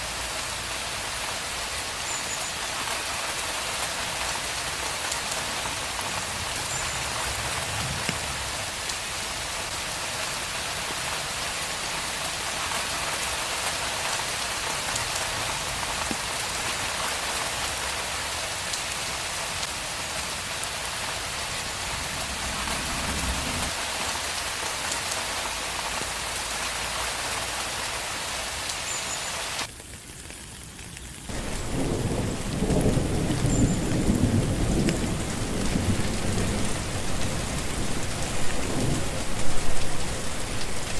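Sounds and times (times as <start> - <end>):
steady rain hissing: 0.0 - 40.9
low thunder rumbling: 31.3 - 40.9.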